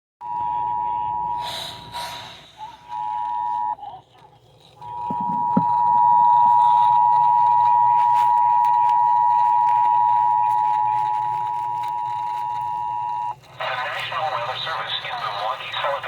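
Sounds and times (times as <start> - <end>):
weather radio alarm tone: 0.2 - 1.9, 2.6 - 3.8, 4.8 - 16.0
brief tone: 0.2 - 3.9, 4.8 - 13.4.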